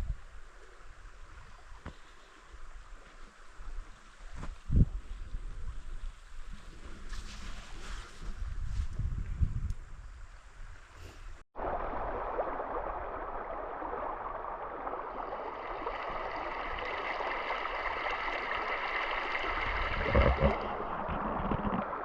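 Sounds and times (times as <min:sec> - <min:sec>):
river water rushing: 0:11.6 - 0:22.0.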